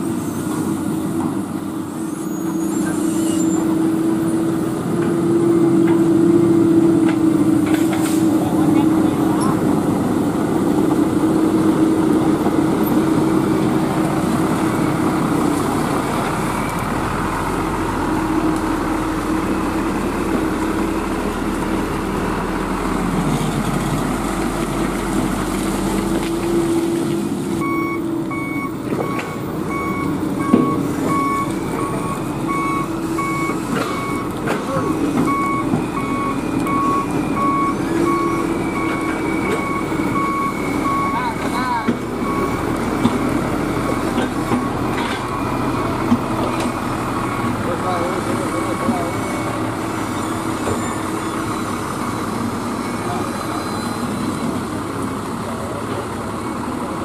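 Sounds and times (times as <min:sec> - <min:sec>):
diesel truck engine running: 0:00.0 - 0:57.0
reversing alarm beeping: 0:27.6 - 0:54.9.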